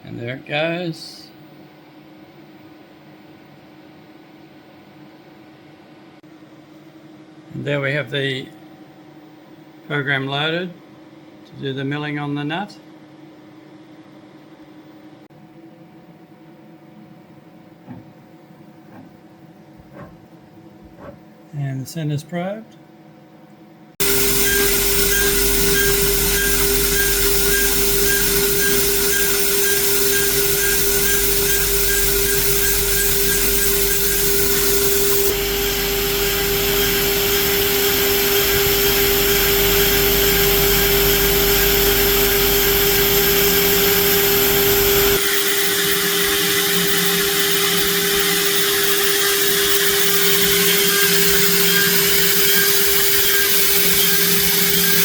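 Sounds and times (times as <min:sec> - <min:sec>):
metal cutting hiss: 0:24.0 - 0:40.7
cnc router spindle running: 0:24.0 - 0:55.0.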